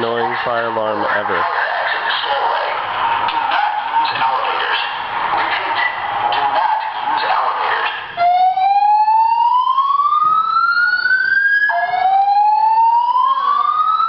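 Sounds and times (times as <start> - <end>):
fire alarm whoop tone: 8.2 - 14.0.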